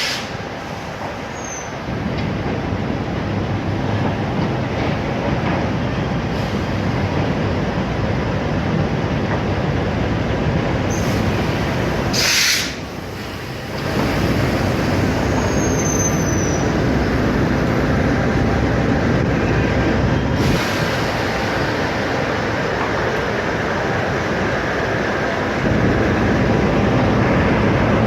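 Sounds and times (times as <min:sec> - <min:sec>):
train wheels rumbling on rails: 0:00.0 - 0:28.0
high wheel squeal: 0:01.3 - 0:01.8, 0:15.1 - 0:16.9
short hiss: 0:12.1 - 0:12.8.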